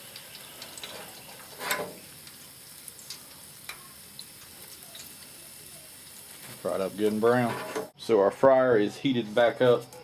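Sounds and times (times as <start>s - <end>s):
hot oil sizzling and crackling: 0.0s - 8.0s
knock and scrape: 7.4s - 7.9s.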